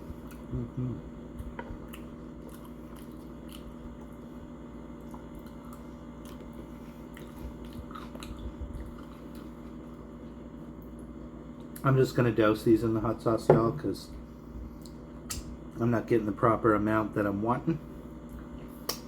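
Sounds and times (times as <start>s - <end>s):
crunchy chewing: 0.0s - 10.0s
low hum: 0.0s - 18.9s.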